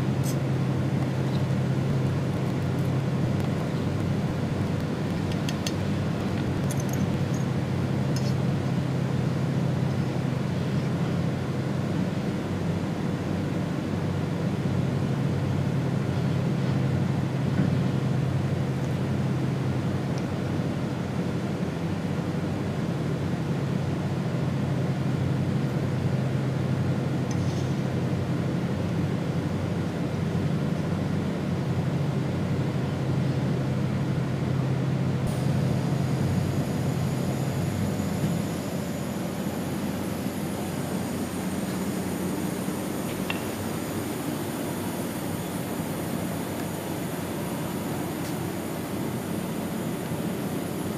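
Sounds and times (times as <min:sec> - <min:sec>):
machine hum: 0:00.0 - 0:10.4, 0:35.2 - 0:50.9
high-pitched whine: 0:35.3 - 0:50.9.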